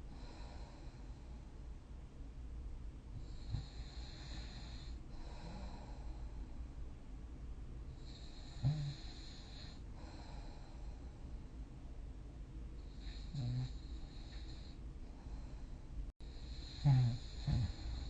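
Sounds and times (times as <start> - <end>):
person snoring: 8.0 - 10.6, 12.9 - 14.8, 16.3 - 18.0
loud snort: 8.4 - 9.8, 16.5 - 18.0.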